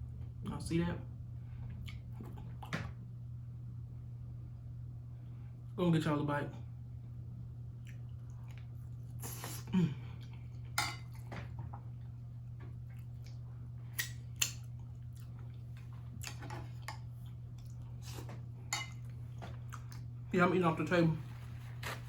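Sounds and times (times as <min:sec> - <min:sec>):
steady low hum: 0:00.0 - 0:22.0
man chewing with lip smacks: 0:01.6 - 0:03.0, 0:07.7 - 0:20.2.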